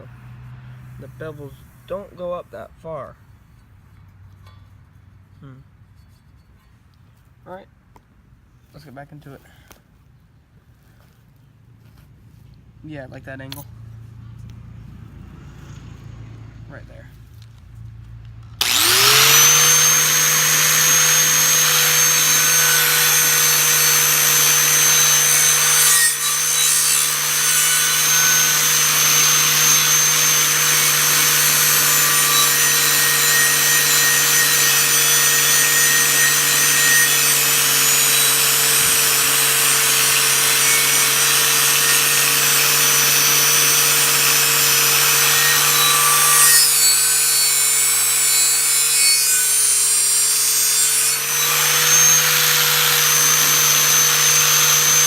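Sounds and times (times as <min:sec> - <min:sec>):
polishing wheel motor whine: 0:18.6 - 0:55.0.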